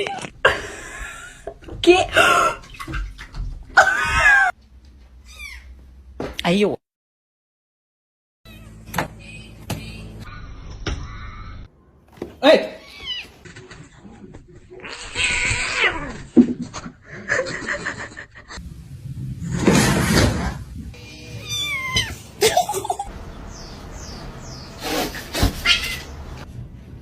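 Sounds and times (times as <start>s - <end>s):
cats meowing: 12.8s - 13.4s, 14.8s - 16.2s, 21.0s - 22.3s, 25.5s - 26.4s.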